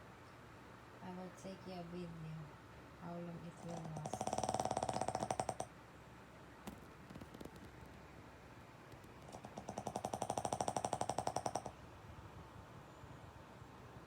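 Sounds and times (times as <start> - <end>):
rattling snore: 3.5 - 5.7, 9.2 - 11.7.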